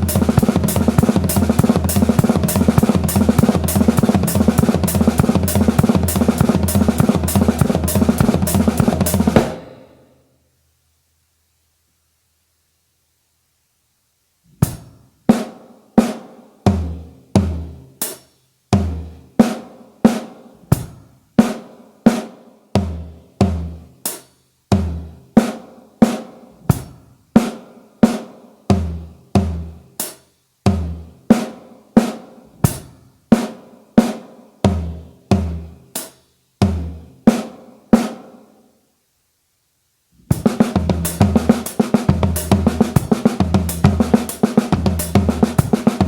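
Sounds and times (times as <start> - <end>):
bass drum: 0.0 - 9.8, 40.3 - 46.0
drum kit strokes: 0.0 - 10.0, 23.5 - 38.2, 40.2 - 46.0.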